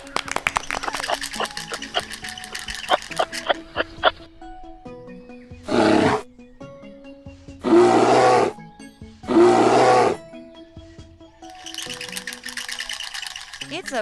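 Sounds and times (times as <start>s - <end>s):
light background music: 0.0s - 14.0s
bear growling: 7.6s - 8.6s.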